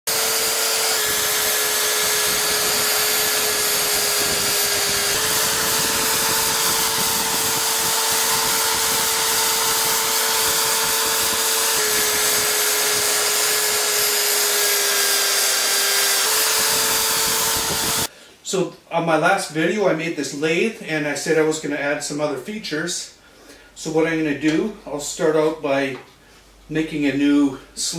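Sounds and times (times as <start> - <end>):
electric drill motor whining: 0.1 - 18.1.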